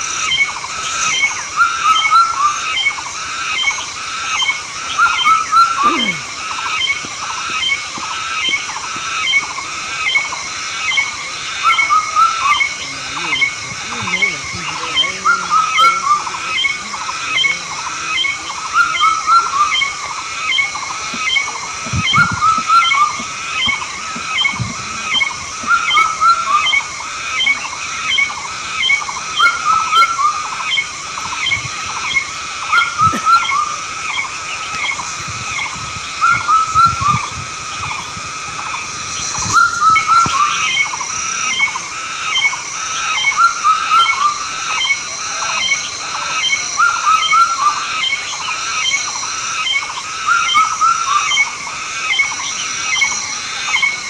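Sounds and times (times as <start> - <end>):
high-pitched drone: 0.0 - 8.6, 9.2 - 54.0
short repeated animal calls: 5.0 - 7.0.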